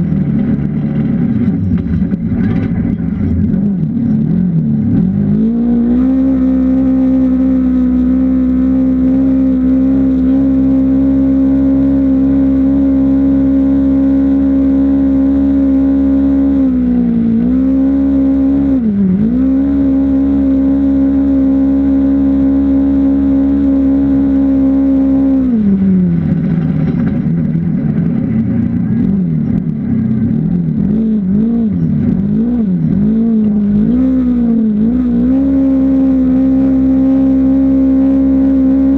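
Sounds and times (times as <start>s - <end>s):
off-road vehicle engine revving: 0.0s - 38.9s.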